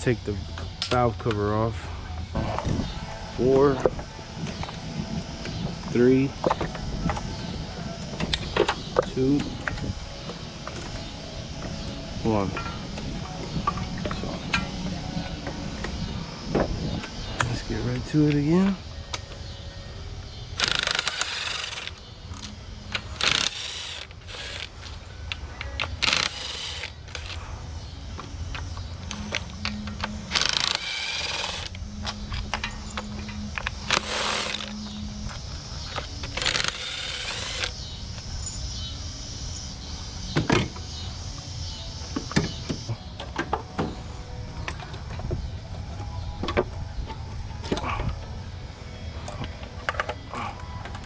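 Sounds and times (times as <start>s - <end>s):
small power tool whirring: 20.6s - 22.0s, 23.0s - 24.9s, 26.0s - 27.4s, 30.3s - 31.8s, 33.8s - 35.0s, 36.2s - 37.7s.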